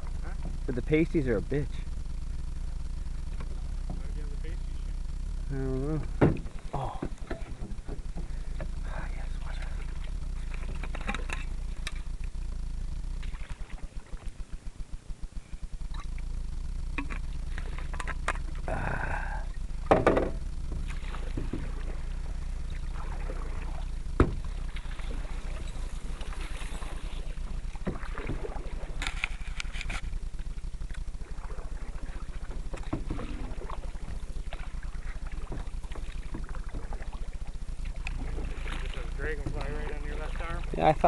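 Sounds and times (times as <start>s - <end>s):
steady low rumble: 0.0s - 41.0s
paddle strokes and splashes: 6.3s - 12.4s, 13.2s - 14.6s, 17.0s - 18.7s, 19.9s - 40.8s.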